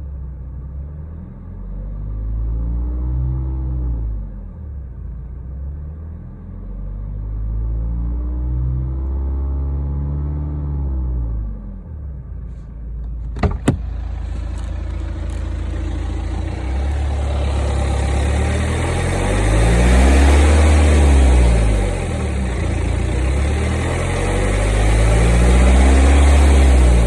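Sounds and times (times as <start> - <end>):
diesel engine revving: 13.0 - 27.0.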